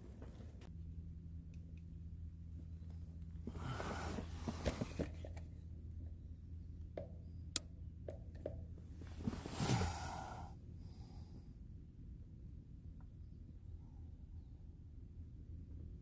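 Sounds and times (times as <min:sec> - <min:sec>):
tent fabric rushing: 0:09.1 - 0:10.3.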